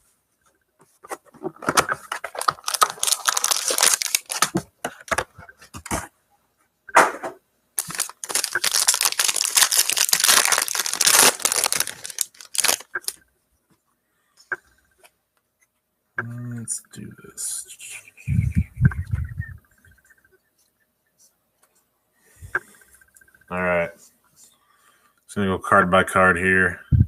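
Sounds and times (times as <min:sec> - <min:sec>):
plastic wrap crinkling: 0:01.6 - 0:05.2, 0:07.8 - 0:13.2
plastic shrink wrap tearing: 0:02.0 - 0:04.6, 0:07.8 - 0:13.2.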